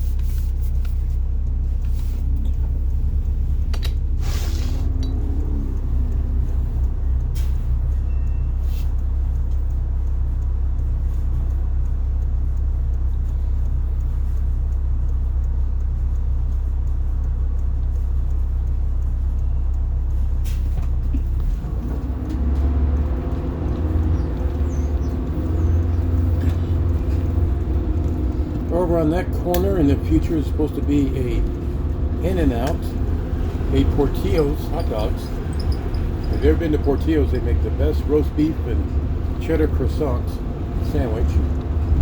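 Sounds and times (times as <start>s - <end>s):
bus diesel engine drone: 0.0s - 42.0s
sharp clicks: 0.8s - 10.2s, 20.4s - 42.0s.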